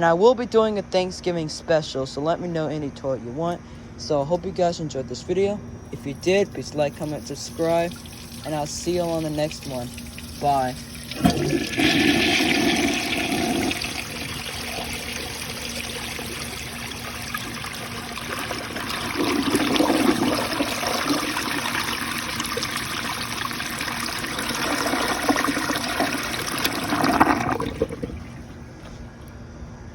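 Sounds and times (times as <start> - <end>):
toilet refilling water rush: 6.0 - 28.6.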